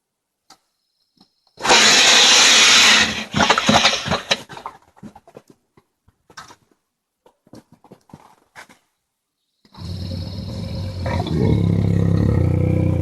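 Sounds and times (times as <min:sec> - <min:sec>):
bear deep growl: 0:09.7 - 0:13.0.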